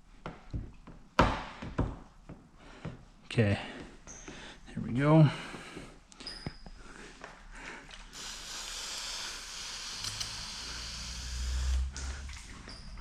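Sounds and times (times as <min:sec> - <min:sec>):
squeegee dragging across wet film: 0:08.2 - 0:13.0.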